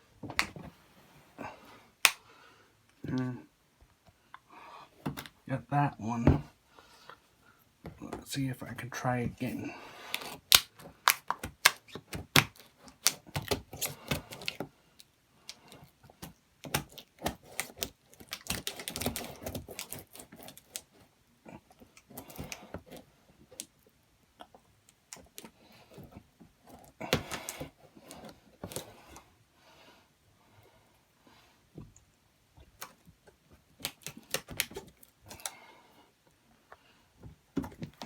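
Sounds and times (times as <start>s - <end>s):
packaging clicks and snaps: 10.1s - 14.6s, 16.6s - 20.9s, 33.7s - 35.6s
packaging rustling: 16.7s - 20.9s.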